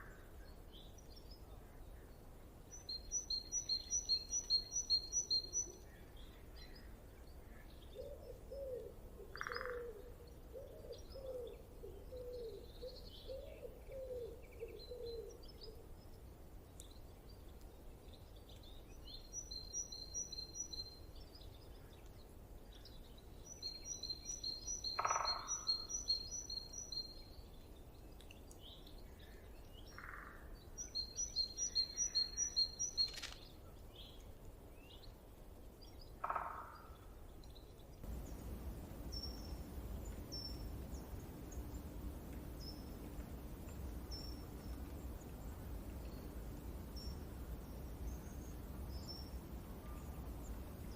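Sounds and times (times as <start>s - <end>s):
low background rush: 38.0s - 50.9s.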